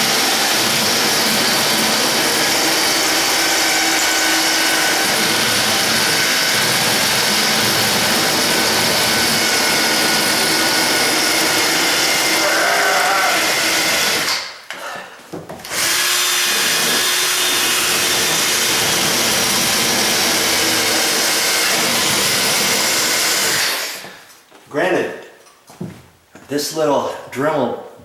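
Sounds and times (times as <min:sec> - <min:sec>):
rotary tool grinding metal: 0:00.0 - 0:14.4.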